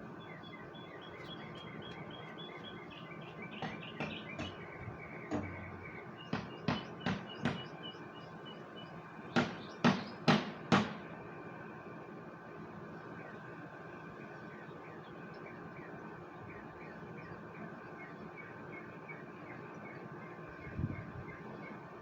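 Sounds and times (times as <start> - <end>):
small bird chirping: 0.2 - 8.9
sharp knocks: 3.5 - 7.8, 9.4 - 11.1.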